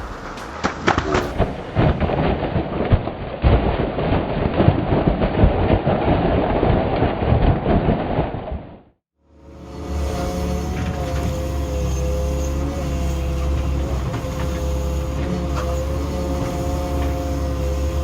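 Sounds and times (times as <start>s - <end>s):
sharp cracks and thuds: 0.4s - 8.9s.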